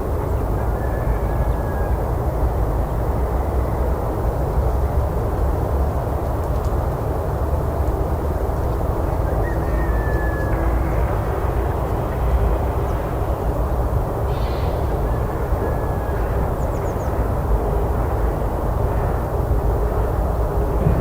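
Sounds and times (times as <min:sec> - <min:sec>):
steady low rumble: 0:16.6 - 0:21.0.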